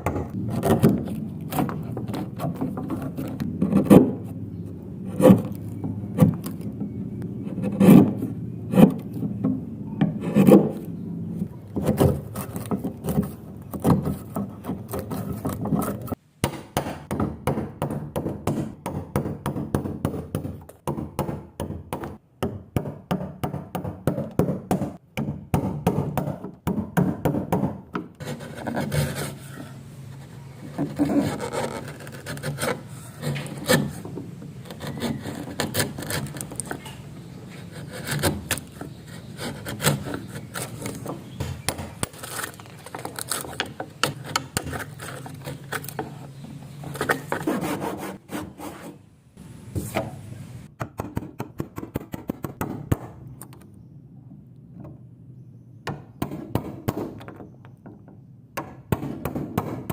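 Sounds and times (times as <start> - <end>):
hand tools rasping wood: 0.0 - 4.3, 10.0 - 10.9, 28.2 - 49.0.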